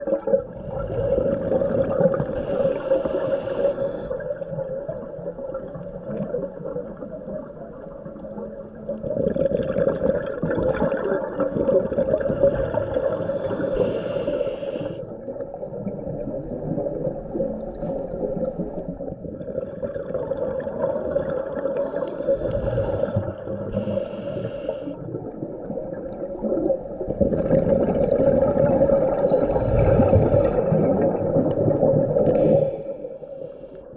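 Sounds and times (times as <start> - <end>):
regulator hissing inhalations: 2.3 - 4.2, 12.9 - 15.1, 21.8 - 25.0, 29.1 - 30.7, 32.3 - 33.9.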